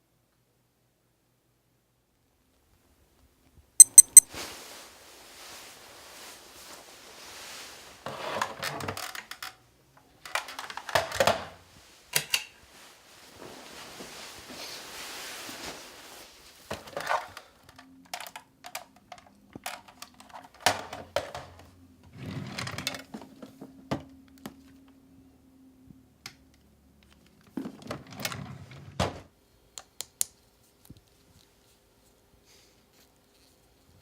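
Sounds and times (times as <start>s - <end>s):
rustling: 3.9s - 8.2s, 11.7s - 16.7s.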